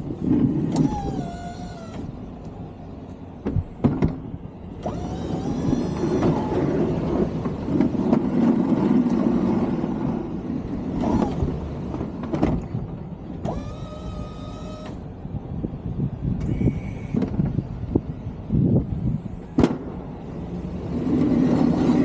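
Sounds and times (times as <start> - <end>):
truck engine running: 0.0 - 8.4
clunks: 0.0 - 10.1, 10.7 - 15.2
electric motor whine: 0.6 - 2.5, 4.8 - 7.4, 13.4 - 15.1.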